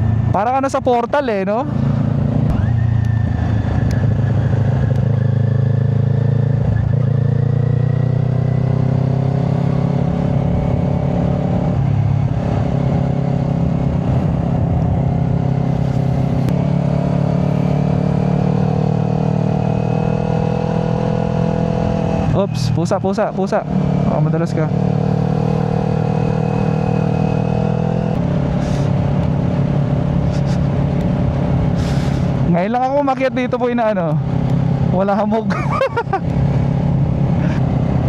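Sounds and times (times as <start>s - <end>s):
motorcycle engine running: 0.0s - 38.0s.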